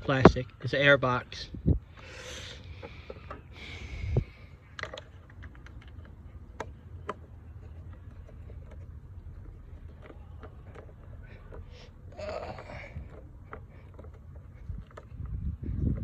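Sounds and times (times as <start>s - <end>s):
small screw clicking and scraping: 2.3s - 16.0s.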